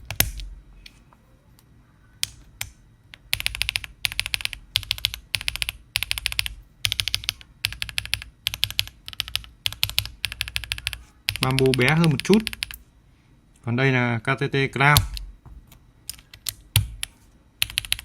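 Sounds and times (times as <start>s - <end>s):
mechanical keyboard typing: 2.2s - 12.8s, 16.1s - 18.0s.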